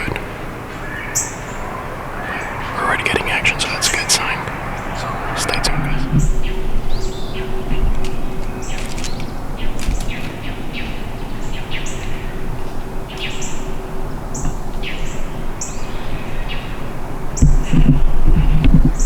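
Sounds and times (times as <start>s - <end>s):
steady background hiss: 0.0s - 7.2s
songbirds chirping: 0.0s - 19.0s.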